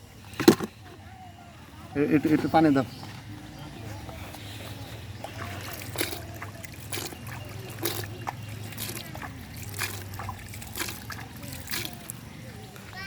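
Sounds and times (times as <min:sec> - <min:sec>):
faint background voices: 0:00.0 - 0:13.0
water splashing: 0:04.4 - 0:13.0.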